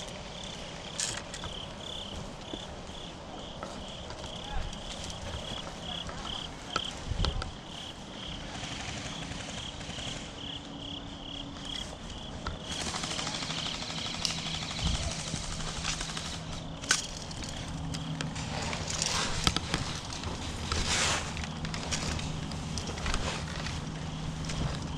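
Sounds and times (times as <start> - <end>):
night insects chirping: 0.0 - 24.9
rustling hiss: 13.8 - 24.9.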